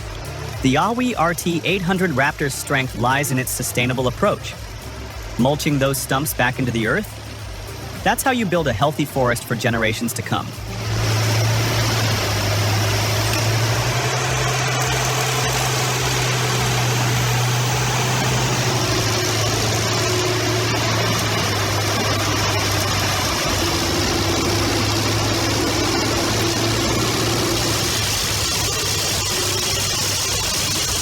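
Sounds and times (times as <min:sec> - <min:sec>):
machine engine running: 0:00.0 - 0:31.0.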